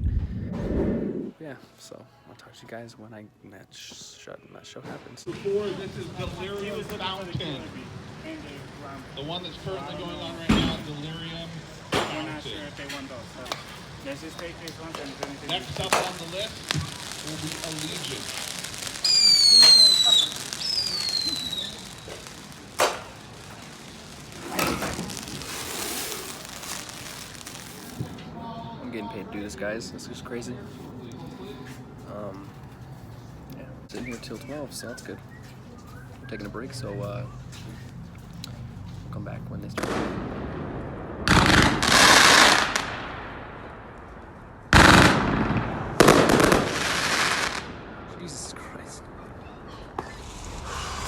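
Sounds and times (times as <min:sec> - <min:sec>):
steady hiss: 0:05.2 - 0:28.1, 0:50.0 - 0:51.0
crackling firework burst: 0:05.3 - 0:28.2, 0:39.8 - 0:51.0
firework crack: 0:05.3 - 0:28.7, 0:39.7 - 0:51.0
firework whistle falling in pitch: 0:19.0 - 0:22.2.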